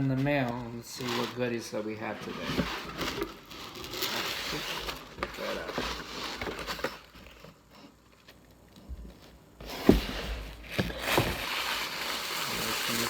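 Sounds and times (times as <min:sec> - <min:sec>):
cardboard box rustling: 0:09.1 - 0:13.0
sharp knocks on cardboard box: 0:09.7 - 0:11.4.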